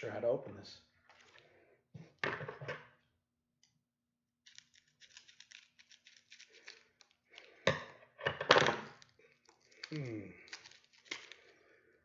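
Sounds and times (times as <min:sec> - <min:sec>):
wrapping tape crackling: 0:04.5 - 0:07.6, 0:08.9 - 0:11.8
package wrapping rustling: 0:04.5 - 0:07.7, 0:08.8 - 0:11.8.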